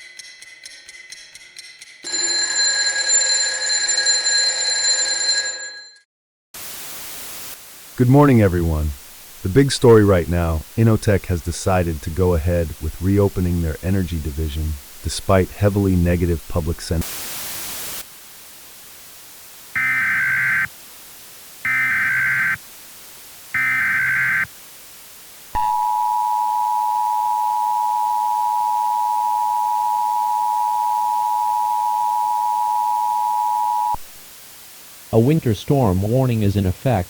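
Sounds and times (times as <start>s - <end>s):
digital data tone bursts: 19.8s - 20.7s, 21.7s - 22.6s, 23.6s - 24.5s
two-tone alert signal: 23.6s - 24.5s, 25.6s - 34.0s.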